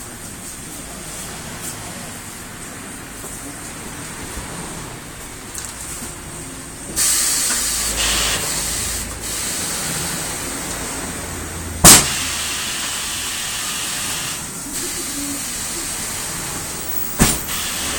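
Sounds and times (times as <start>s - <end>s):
compressed air hissing: 6.9s - 17.9s
loud sharp bang: 11.8s - 12.6s, 17.0s - 17.9s.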